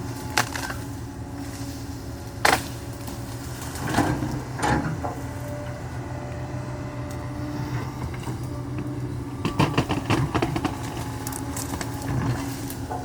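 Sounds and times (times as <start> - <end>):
excavator diesel engine running: 0.0 - 13.0
tree wood cracking and breaking: 0.1 - 1.7, 9.5 - 13.0.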